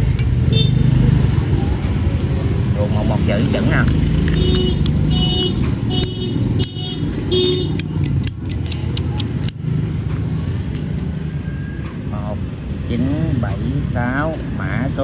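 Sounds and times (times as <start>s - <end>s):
street traffic: 0.0s - 15.0s
sharp metallic clicks: 3.8s - 9.6s.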